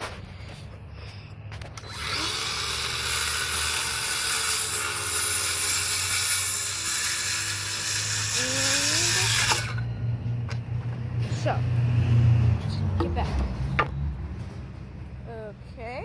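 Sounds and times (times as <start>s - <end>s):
electric saw cutting wood: 1.6s - 9.9s.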